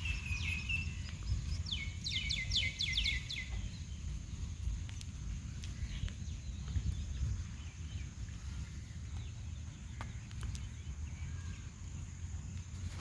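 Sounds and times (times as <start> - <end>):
faint bird chirps: 0.0 - 4.2.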